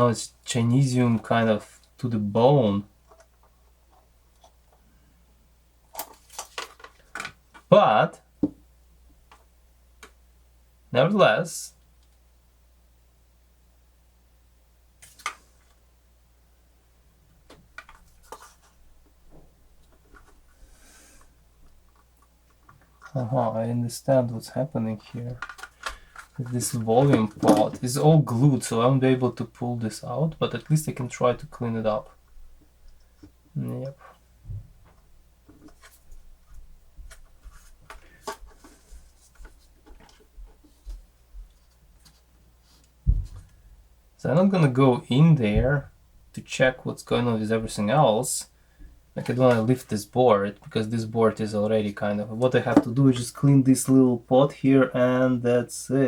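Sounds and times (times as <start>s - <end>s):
plastic parts and tools clicking: 25.3s - 27.8s.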